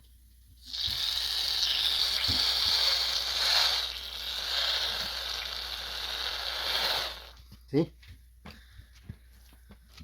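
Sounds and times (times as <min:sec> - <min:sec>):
air hissing out of a tire: 0:00.6 - 0:07.4.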